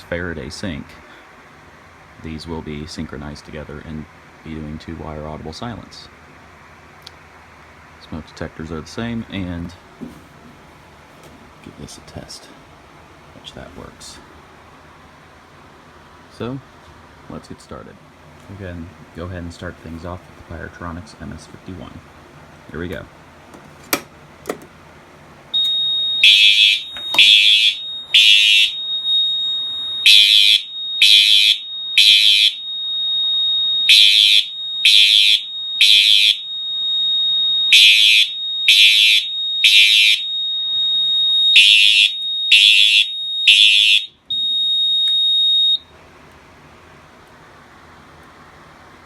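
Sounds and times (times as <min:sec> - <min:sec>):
steady high alarm tone: 0:25.5 - 0:45.9
fire alarm horn blasts: 0:25.5 - 0:46.0.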